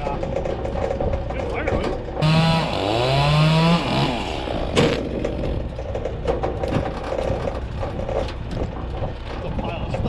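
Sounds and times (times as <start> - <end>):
low engine running with knocks: 0.0 - 10.0
sharp crack: 2.2 - 5.4
small engine revving: 2.2 - 5.6.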